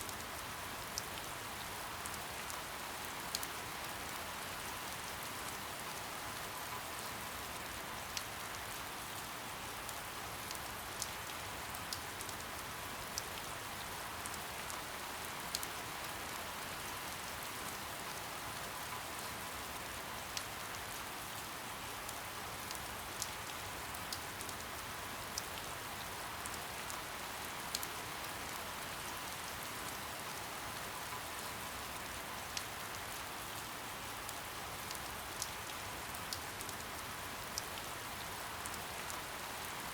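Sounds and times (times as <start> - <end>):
steady soft rain: 0.0 - 39.9.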